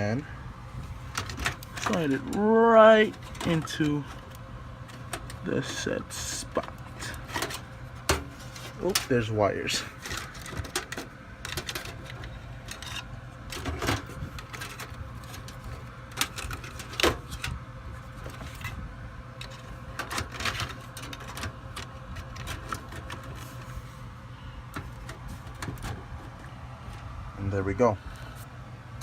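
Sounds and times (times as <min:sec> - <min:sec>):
low steady hum: 0:00.0 - 0:29.0
clicks and knocks of computer parts: 0:01.1 - 0:02.4, 0:03.0 - 0:05.5, 0:06.5 - 0:09.1, 0:09.9 - 0:18.8, 0:19.4 - 0:23.4, 0:24.7 - 0:26.5.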